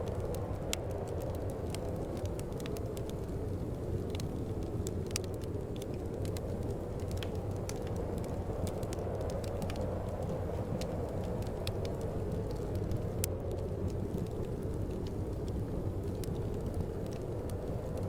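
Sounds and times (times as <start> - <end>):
low wind rumble: 0.0 - 18.0
wood fire crackling and popping: 0.0 - 18.0.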